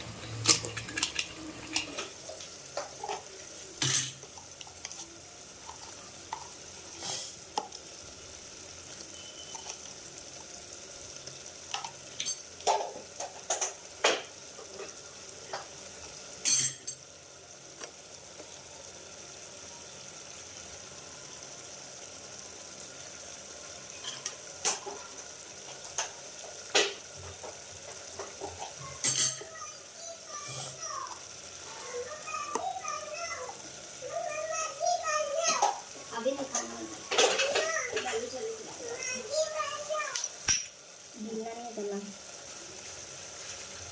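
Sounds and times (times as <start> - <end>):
food sizzling in a pan: 0.0 - 43.9
metal spoon scraping a pan: 0.2 - 2.2.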